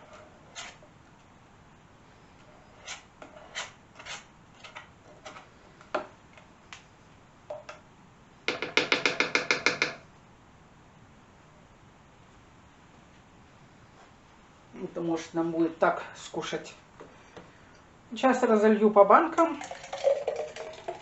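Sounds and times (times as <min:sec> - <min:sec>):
utensil scraping a container: 0:00.0 - 0:00.8, 0:02.4 - 0:05.5.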